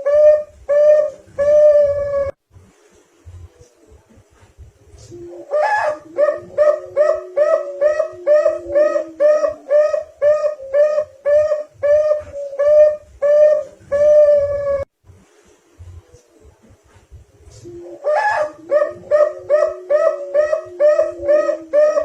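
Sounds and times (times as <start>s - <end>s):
dove cooing: 0.0s - 2.4s, 5.0s - 14.9s, 17.4s - 22.0s.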